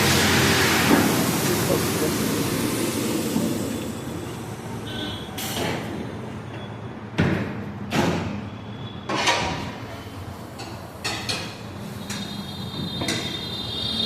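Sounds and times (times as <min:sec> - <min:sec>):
steady background hum: 0:00.0 - 0:08.4.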